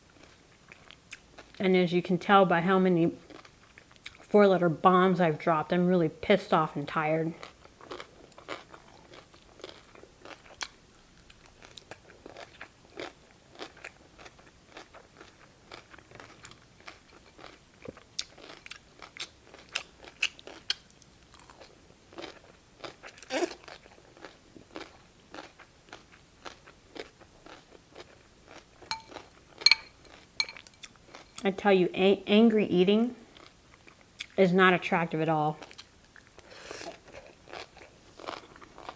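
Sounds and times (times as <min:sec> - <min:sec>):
crunching and chewing cucumber: 0:03.2 - 0:04.3, 0:07.3 - 0:31.5, 0:35.6 - 0:38.9.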